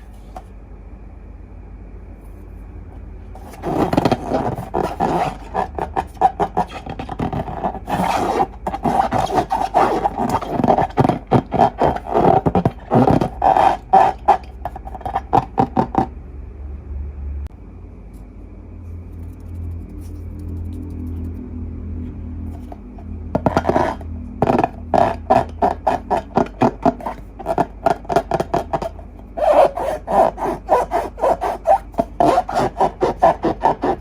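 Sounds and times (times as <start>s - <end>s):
slime squelching and scraping: 3.4s - 16.1s, 22.4s - 34.0s.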